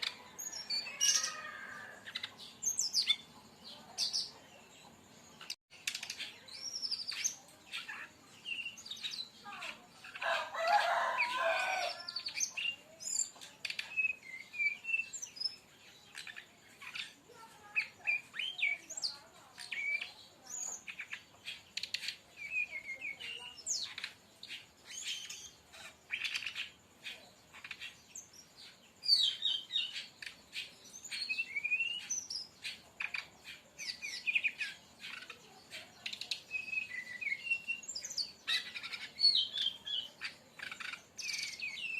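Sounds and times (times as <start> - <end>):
bird chirping and whistling: 31.1 - 32.3, 36.1 - 40.0.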